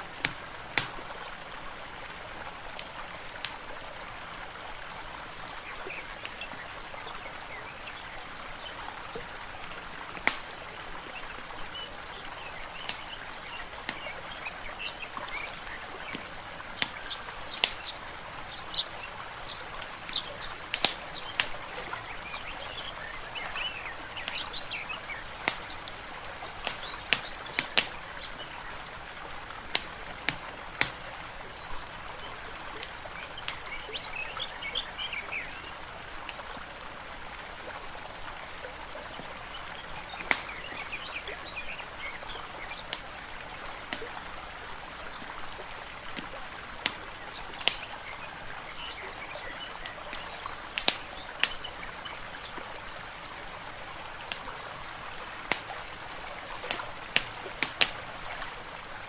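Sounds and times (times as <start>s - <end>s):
water hiss: 0.0s - 36.4s, 39.3s - 59.0s
fire crackling and popping: 0.2s - 1.0s, 9.6s - 10.5s, 15.3s - 28.0s, 47.6s - 47.9s, 49.8s - 51.7s, 55.2s - 58.4s
birds chirping: 5.4s - 10.4s, 11.0s - 29.0s, 30.8s - 35.8s, 39.0s - 43.0s, 46.4s - 53.1s.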